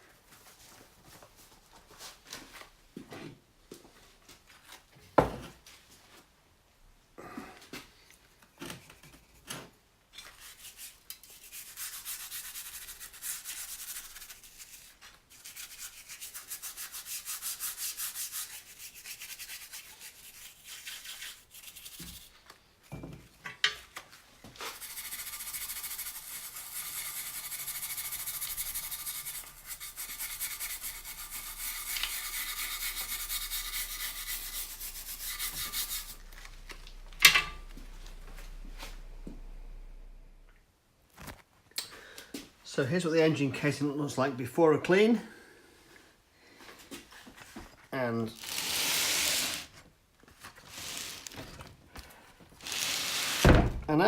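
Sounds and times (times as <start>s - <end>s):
brush scrubbing metal casing: 10.4s - 22.4s, 24.6s - 40.2s.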